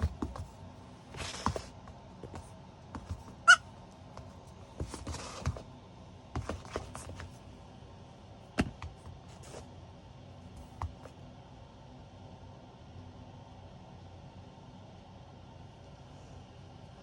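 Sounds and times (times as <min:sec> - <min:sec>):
goat kid squeaking: 0:03.3 - 0:03.6.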